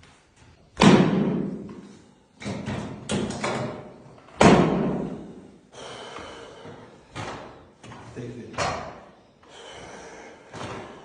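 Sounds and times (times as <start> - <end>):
heavy thuds: 0.8 - 9.1.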